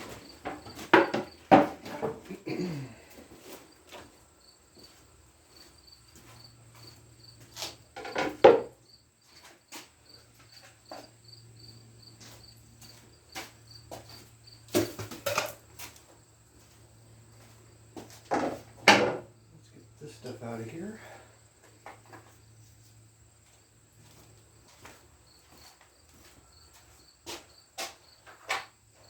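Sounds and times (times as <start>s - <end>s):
objects knocking and clattering: 0.0s - 2.7s, 8.0s - 8.8s, 14.7s - 15.8s, 18.3s - 19.3s.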